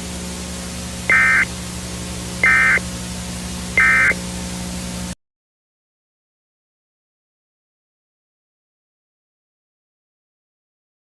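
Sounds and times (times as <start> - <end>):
steady hum and static: 0.0 - 5.2
buzzy electronic screeches: 1.1 - 1.5, 2.4 - 2.8, 3.8 - 4.2.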